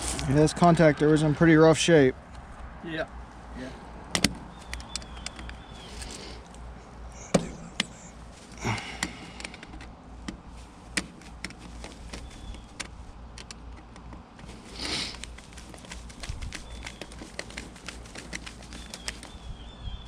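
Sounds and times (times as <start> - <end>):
steady low rumble: 0.0 - 18.2
hand tools clicking and knocking: 11.0 - 19.4.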